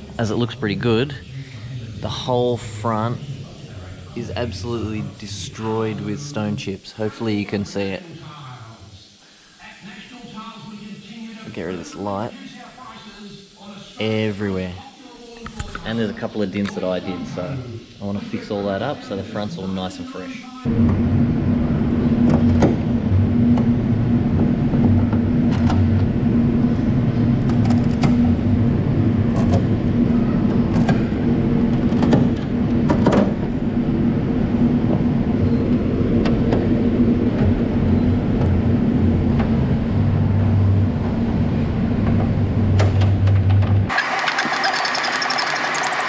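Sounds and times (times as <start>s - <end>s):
machine hum: 43.9s - 46.0s.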